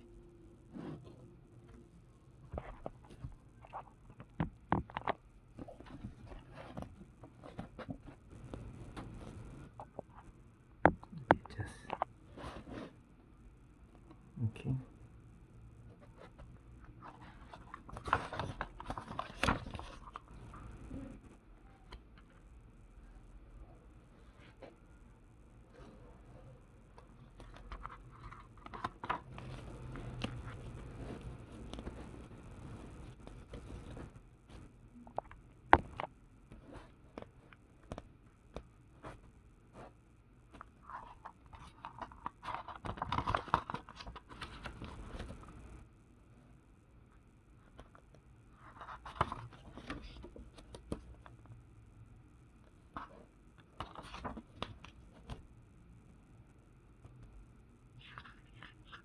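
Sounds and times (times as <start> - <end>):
paper pages rustling and flicking: 17.0 - 20.3, 27.4 - 34.2, 40.6 - 45.6, 48.6 - 51.3, 53.0 - 55.4.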